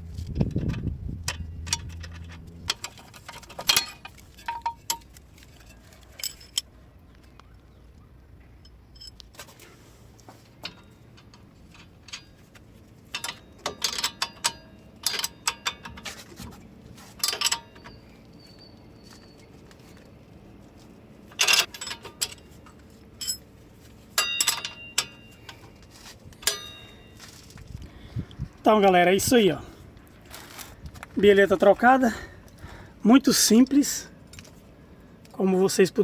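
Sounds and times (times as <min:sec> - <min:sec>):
hand tools clicking on metal nuts: 0:00.6 - 0:06.7, 0:10.6 - 0:16.2.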